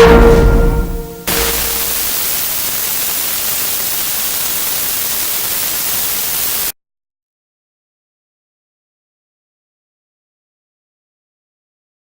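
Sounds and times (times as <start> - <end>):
loud static hiss: 1.2 - 6.8.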